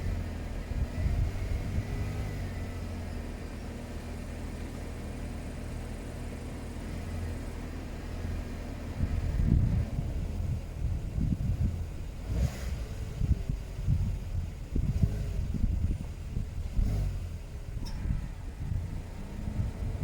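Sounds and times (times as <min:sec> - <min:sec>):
wind on microphone: 0:00.0 - 0:02.8, 0:08.8 - 0:20.0
car engine humming: 0:00.0 - 0:20.0
low rumble: 0:07.6 - 0:20.0.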